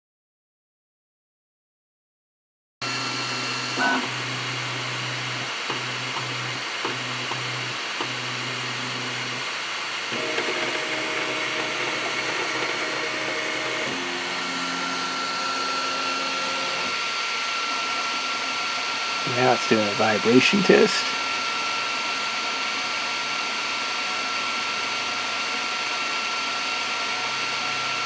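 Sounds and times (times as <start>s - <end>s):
motor hum tones changing pitch: 2.8s - 9.4s, 10.1s - 17.1s
cooling fans whirring: 2.8s - 21.6s.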